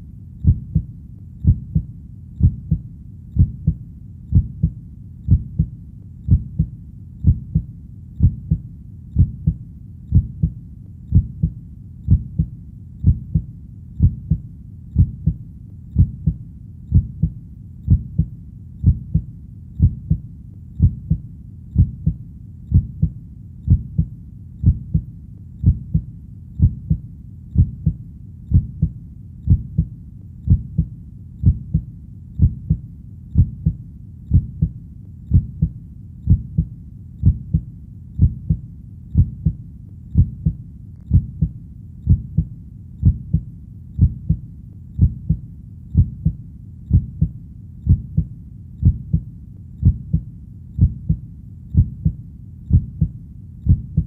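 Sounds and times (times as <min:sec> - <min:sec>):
heartbeat thuds: 0:00.4 - 0:38.6, 0:39.2 - 0:44.4, 0:45.0 - 0:54.0.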